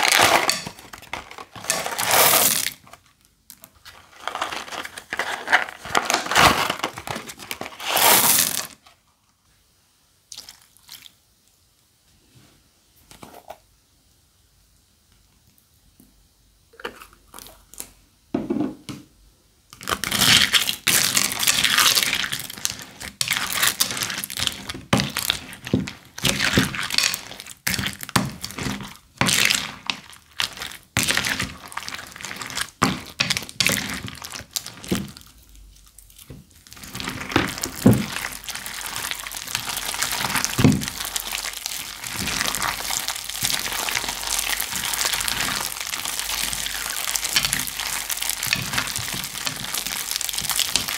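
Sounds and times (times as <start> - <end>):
crunchy slime crackling: 0.0 - 8.8, 19.7 - 50.9.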